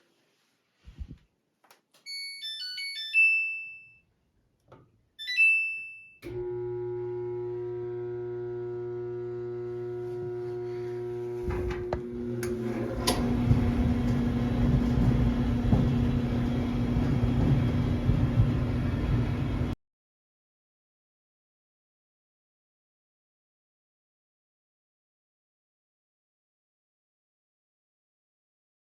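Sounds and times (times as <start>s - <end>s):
electrical hum: 6.3s - 19.8s
dryer control panel tune: 11.1s - 19.8s
rough rumbling: 12.6s - 19.8s.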